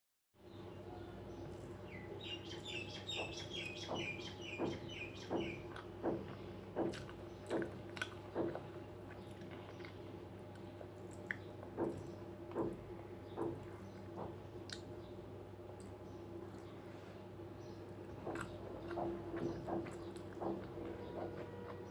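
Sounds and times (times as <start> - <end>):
bird chirping: 0.4 - 6.2, 17.6 - 21.9
soft chewing: 0.9 - 21.9.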